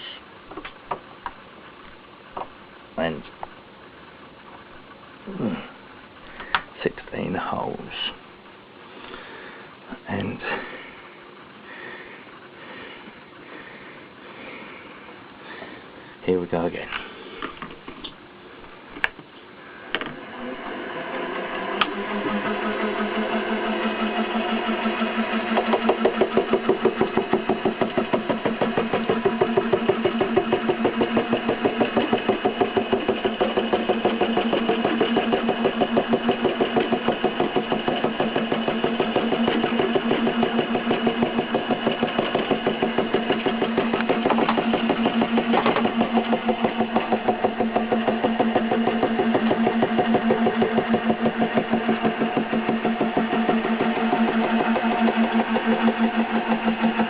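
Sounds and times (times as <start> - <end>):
milling machine cutting: 19.8 - 57.0.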